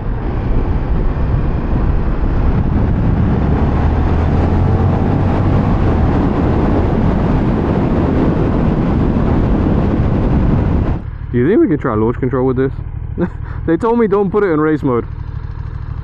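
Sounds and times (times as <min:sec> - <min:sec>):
wind rush on microphone: 0:00.0 - 0:11.9
motorcycle engine running: 0:00.0 - 0:16.0.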